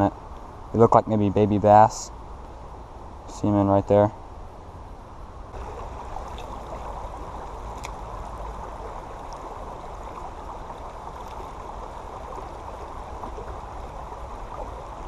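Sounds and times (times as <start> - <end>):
creek water running over rocks: 5.5 - 15.0.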